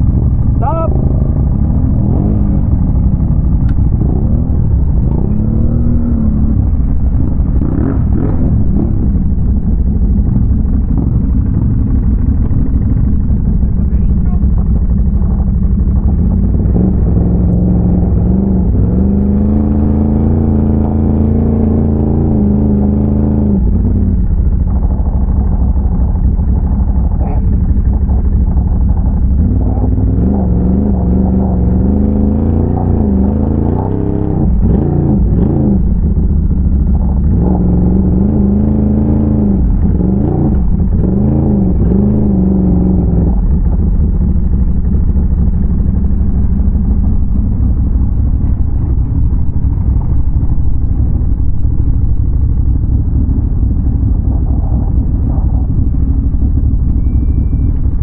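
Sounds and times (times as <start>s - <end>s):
atv engine revving: 0.0s - 58.0s.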